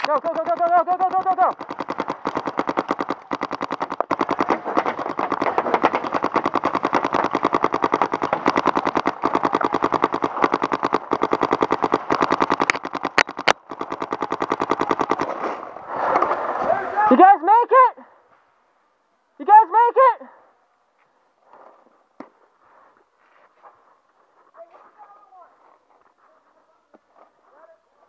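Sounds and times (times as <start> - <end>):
paintball marker rapid firing: 0.0 - 15.4.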